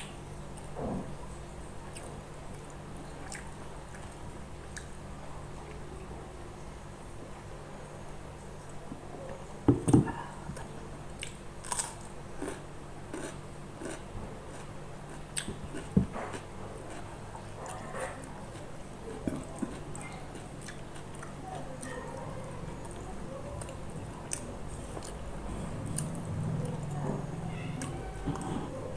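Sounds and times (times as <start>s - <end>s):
person chewing food: 1.8s - 5.0s, 11.2s - 22.0s, 22.8s - 26.9s, 27.8s - 28.9s.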